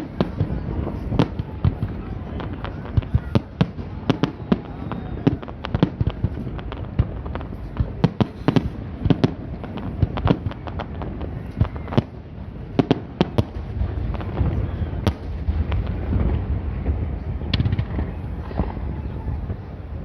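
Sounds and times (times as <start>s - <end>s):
fireworks bangs and cracks: 0.0s - 20.0s.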